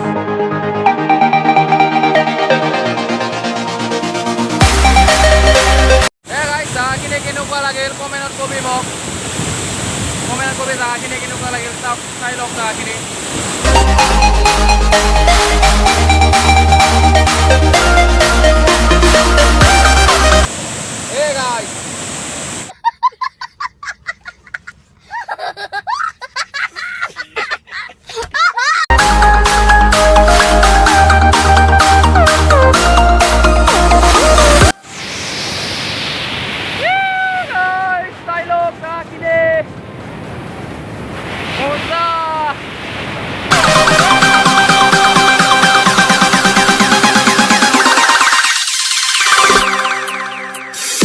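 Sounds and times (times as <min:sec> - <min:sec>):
electronic dance music: 0:00.0 - 0:06.1, 0:13.6 - 0:20.5, 0:28.9 - 0:34.8, 0:43.5 - 0:51.0
high-pitched laughter: 0:22.7 - 0:28.9
steady rushing noise: 0:37.6 - 0:51.0
short falling synth notes: 0:43.5 - 0:51.0.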